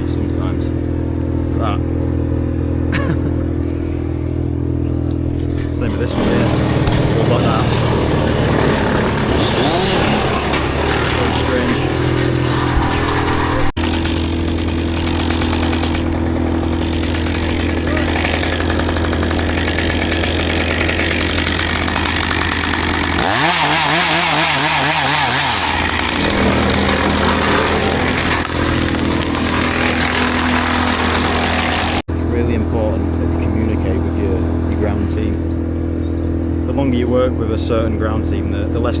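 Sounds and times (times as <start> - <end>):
chainsaw idling and revving: 4.0 - 32.1.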